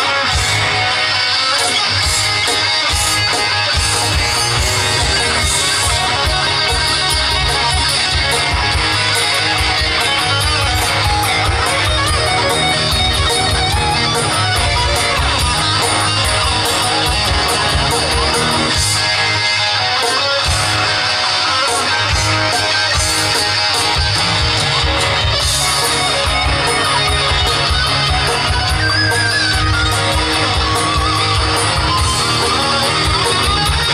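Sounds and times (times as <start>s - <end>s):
electric guitar: 0.0s - 33.9s
rockabilly band playing: 0.0s - 33.9s.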